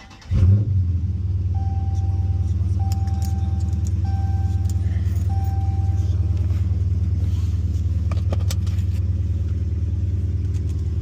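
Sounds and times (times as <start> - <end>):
car engine idling: 0.0 - 11.0
single-tone warning chime: 1.6 - 6.2.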